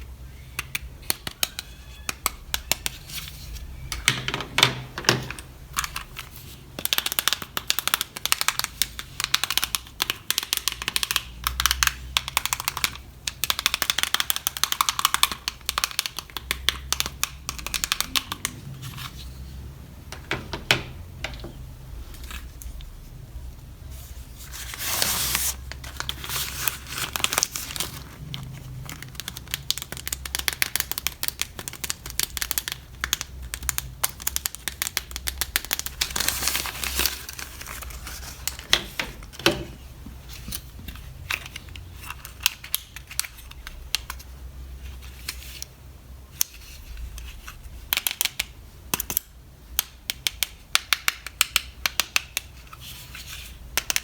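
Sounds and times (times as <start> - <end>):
plastic and card crinkling: 22.0 - 45.7
packaging rustle: 24.4 - 39.7.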